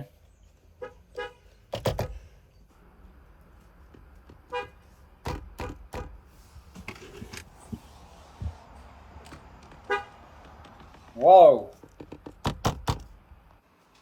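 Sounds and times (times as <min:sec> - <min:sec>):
car horn toot: 0:00.8 - 0:01.5, 0:04.5 - 0:04.8, 0:09.8 - 0:10.3
sharp knocks: 0:11.8 - 0:13.1.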